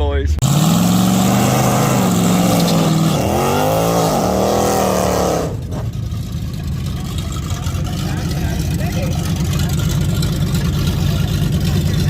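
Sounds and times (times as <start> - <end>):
car engine revving hard: 0.4 - 6.0.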